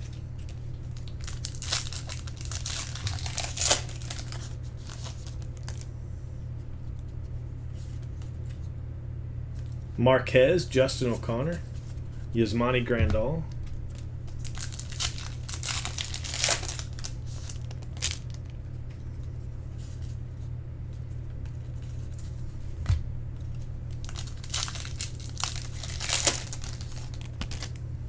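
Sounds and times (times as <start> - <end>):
low hum: 0.0 - 28.0
card wrappers crinkling and tearing: 0.4 - 5.9, 13.6 - 18.6, 23.9 - 27.8.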